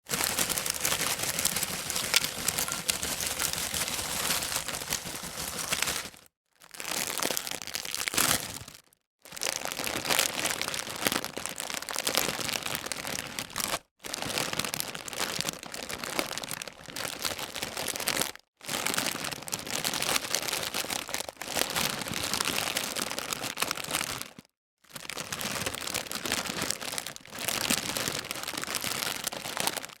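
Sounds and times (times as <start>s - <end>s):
plastic chip bag crinkling: 0.0s - 8.7s.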